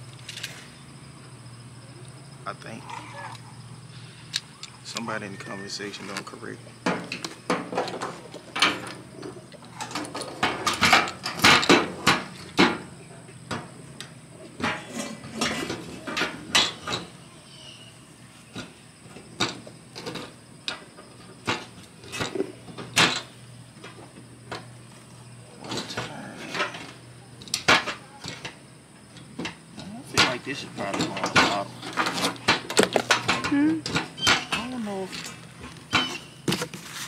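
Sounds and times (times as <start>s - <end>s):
clicks and rattles of parts handled: 6.0s - 12.8s, 30.2s - 36.8s.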